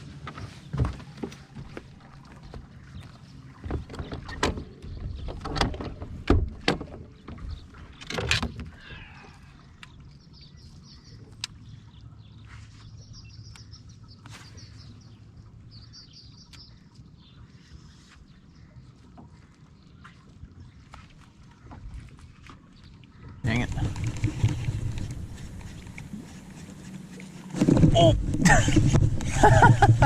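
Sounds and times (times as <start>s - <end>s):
small birds chirping: 8.8s - 19.0s.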